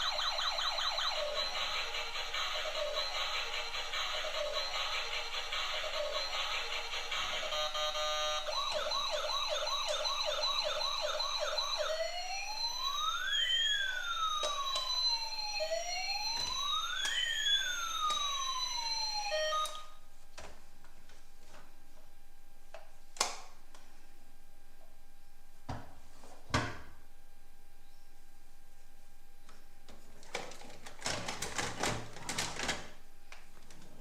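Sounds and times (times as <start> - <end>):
toy electronic siren: 0.0 - 20.0.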